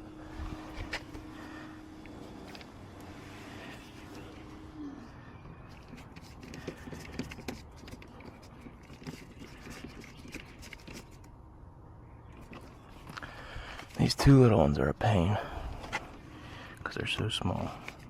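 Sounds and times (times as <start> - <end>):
small clicks and scrapes: 5.6 - 11.4, 12.3 - 14.1, 17.1 - 18.0.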